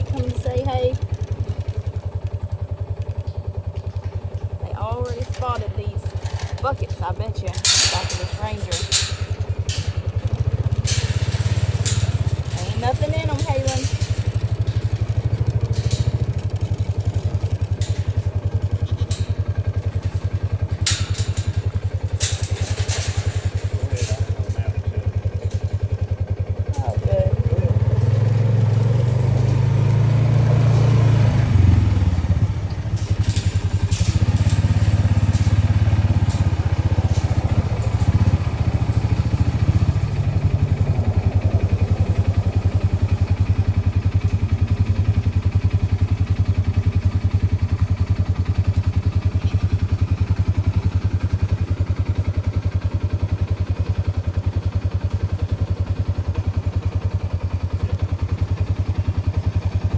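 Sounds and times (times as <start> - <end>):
utility vehicle engine running: 0.0 - 59.9
clattering: 3.0 - 51.9.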